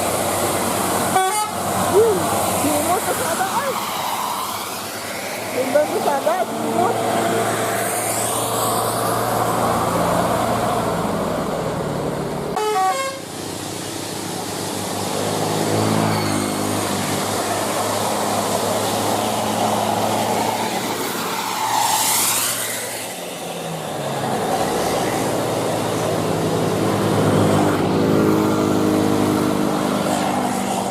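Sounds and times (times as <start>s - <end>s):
bus engine running: 0.0s - 21.7s, 22.3s - 30.9s
musical air horn melodies: 1.1s - 1.6s, 12.6s - 13.3s.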